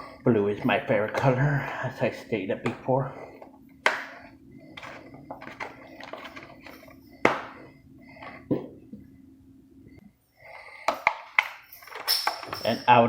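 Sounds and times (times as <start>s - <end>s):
packaging rustling: 4.8s - 7.0s.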